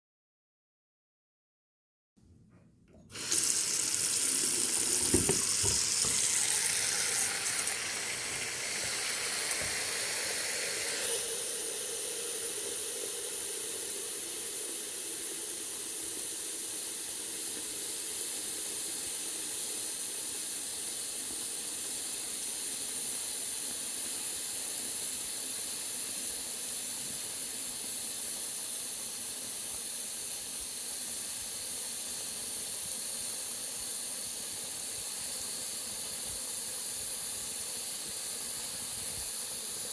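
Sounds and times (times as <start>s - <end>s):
water running into sink: 2.9s - 14.6s.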